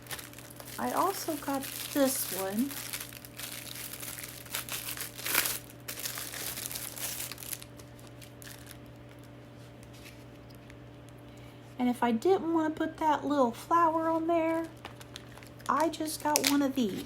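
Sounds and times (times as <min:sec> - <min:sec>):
packaging crinkling and rustling: 0:00.0 - 0:10.8, 0:14.5 - 0:17.0.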